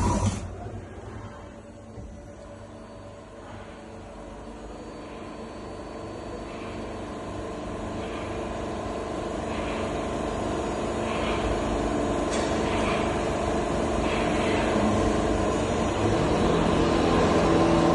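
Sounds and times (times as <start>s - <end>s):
lathe machine hum: 1.8s - 17.9s.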